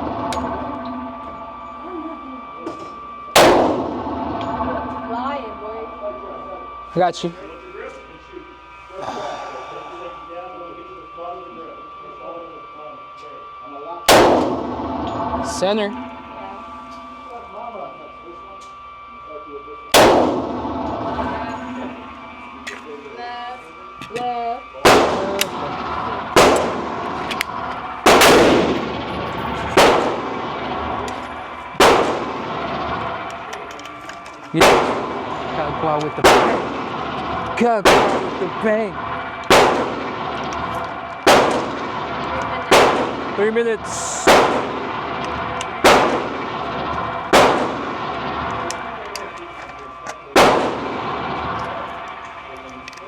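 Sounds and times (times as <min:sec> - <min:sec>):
gunshots with echoing tail: 0:03.4 - 0:05.1, 0:14.1 - 0:17.2, 0:20.0 - 0:22.8, 0:24.8 - 0:33.7, 0:34.6 - 0:49.0, 0:50.3 - 0:52.1.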